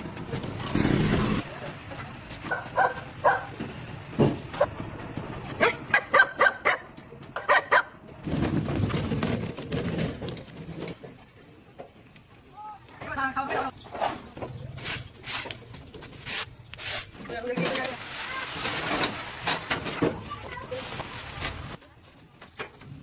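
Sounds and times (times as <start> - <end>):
dog barking: 2.5 - 3.5, 5.6 - 8.0.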